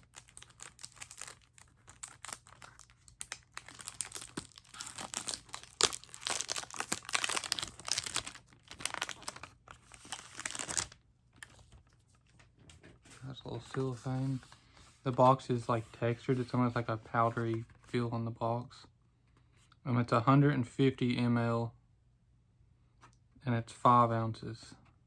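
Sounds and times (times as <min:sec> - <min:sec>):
cellophane crinkling and tearing: 0:00.0 - 0:11.9.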